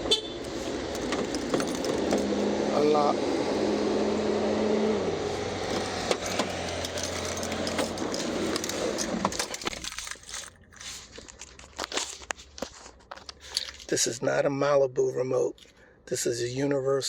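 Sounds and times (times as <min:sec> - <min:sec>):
outdoor background noise: 0:00.0 - 0:17.0
keys jangling: 0:00.8 - 0:02.4, 0:05.6 - 0:12.0.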